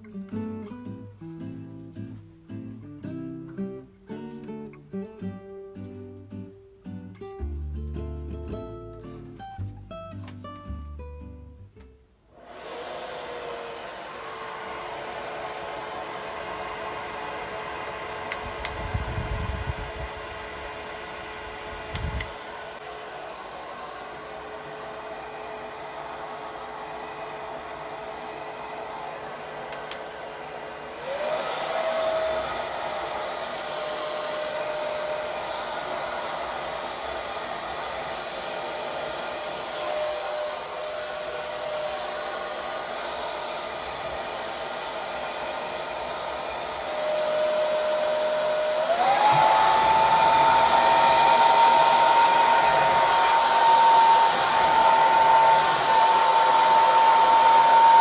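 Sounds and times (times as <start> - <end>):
hair dryer running: 12.4 - 58.0.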